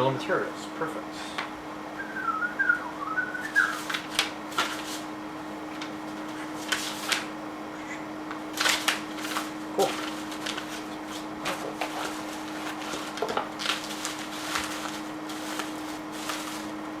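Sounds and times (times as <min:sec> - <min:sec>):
low electrical hum: 0:00.0 - 0:17.0
wavering whistle: 0:02.0 - 0:03.9
packaging rustling: 0:08.5 - 0:16.8.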